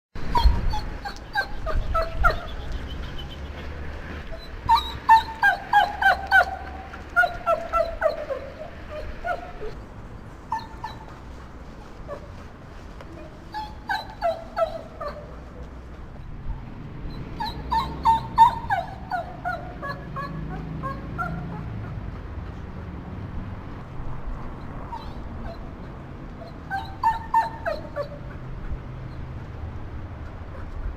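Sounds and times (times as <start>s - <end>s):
dog whimpering: 0.3s - 2.6s, 4.3s - 9.8s, 10.5s - 11.1s, 13.1s - 15.4s, 17.1s - 21.7s, 24.9s - 25.7s, 26.4s - 28.4s.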